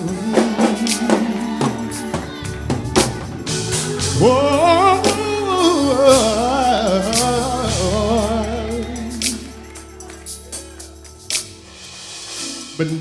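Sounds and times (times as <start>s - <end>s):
drum hits: 0.0s - 8.5s
sustained low chords: 0.0s - 11.9s
person singing gospel: 0.0s - 13.0s.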